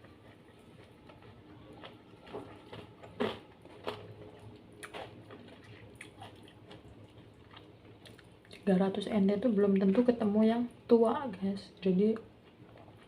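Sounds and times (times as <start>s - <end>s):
chewing and mouth sounds: 0.0s - 8.7s, 12.3s - 13.0s.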